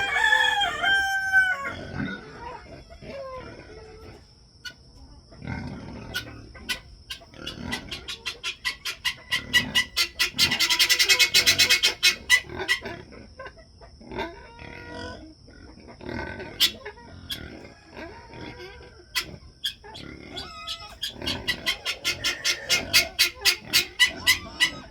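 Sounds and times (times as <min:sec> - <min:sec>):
chickens: 0:00.0 - 0:24.9
pig grunts: 0:05.4 - 0:06.5, 0:07.3 - 0:08.2, 0:14.0 - 0:18.7, 0:19.9 - 0:24.9.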